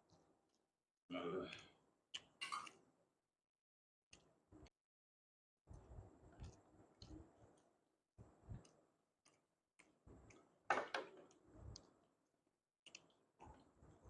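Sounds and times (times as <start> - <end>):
eating clicks and knocks: 12.8 - 13.8.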